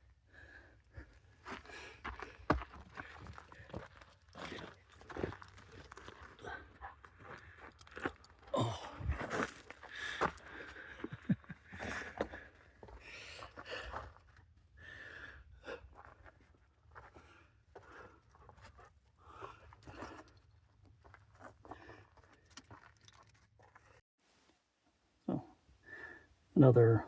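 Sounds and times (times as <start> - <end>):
footsteps on lava trail: 1.0 - 14.4.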